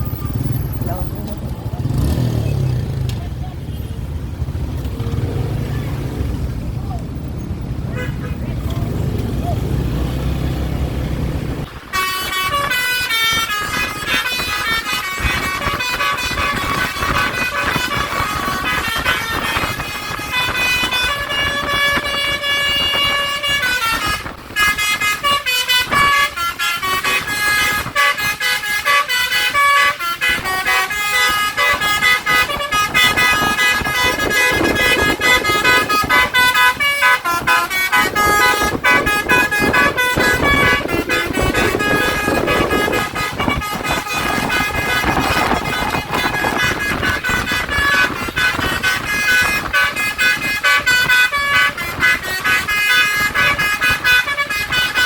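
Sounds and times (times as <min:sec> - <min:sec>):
bus horn playing melodies: 0:07.8 - 0:08.6, 0:11.7 - 0:55.0.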